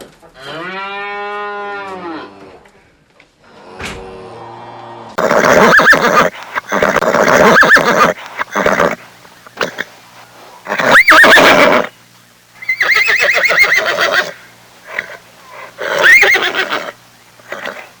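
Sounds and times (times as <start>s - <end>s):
horse neighing: 5.1s - 9.9s, 10.6s - 11.9s, 12.6s - 18.0s.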